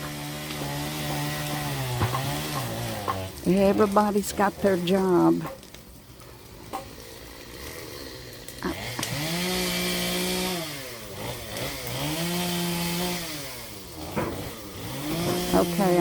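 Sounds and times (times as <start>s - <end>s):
chainsaw revving: 0.0s - 5.5s, 6.5s - 16.0s.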